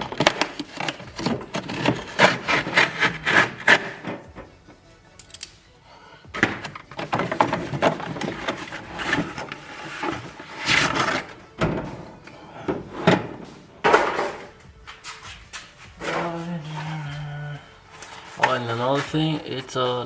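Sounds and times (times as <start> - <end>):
plastic case scraping and clattering: 0.0 - 4.5, 6.4 - 14.6.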